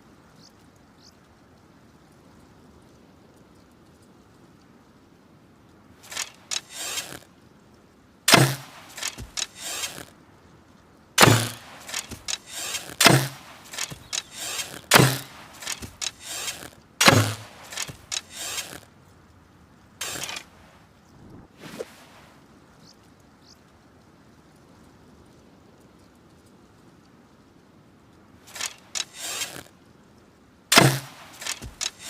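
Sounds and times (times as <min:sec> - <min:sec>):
light clicks and rattles: 0:05.7 - 0:10.2, 0:11.2 - 0:20.6, 0:28.4 - 0:32.0
bow shot snap and thump: 0:08.3 - 0:10.0, 0:11.2 - 0:18.8, 0:30.7 - 0:32.0
faint clatter: 0:28.5 - 0:29.7, 0:30.7 - 0:32.0.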